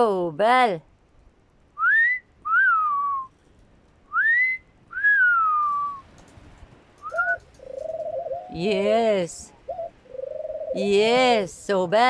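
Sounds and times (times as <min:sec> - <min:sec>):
wolf whistle: 0:01.8 - 0:03.3, 0:04.1 - 0:06.0, 0:07.0 - 0:07.4
short rising whistle: 0:04.1 - 0:06.0.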